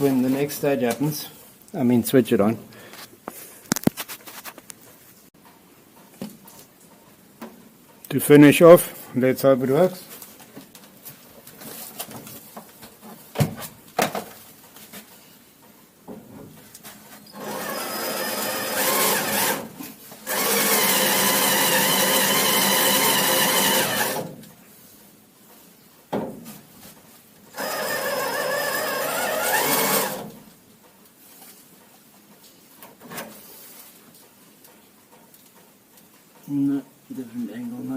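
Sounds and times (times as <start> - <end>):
power drill drilling: 17.4 - 24.3, 27.5 - 30.3.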